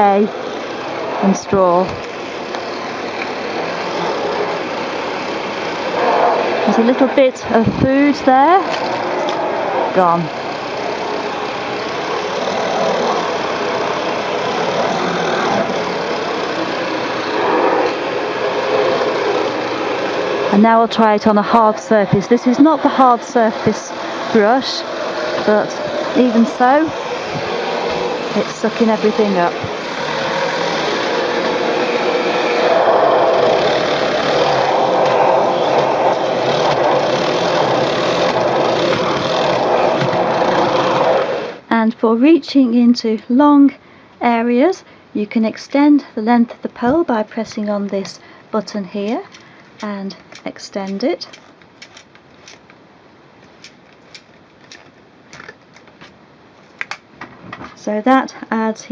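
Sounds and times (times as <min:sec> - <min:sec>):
vacuum cleaner on carpet: 0:00.0 - 0:41.6.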